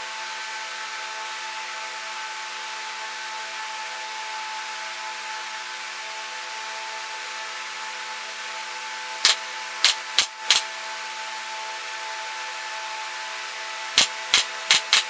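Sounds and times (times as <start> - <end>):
steady machine hum: 9.2 - 10.6, 13.9 - 15.0
sharp clicks or knocks: 9.3 - 10.6, 14.0 - 15.0.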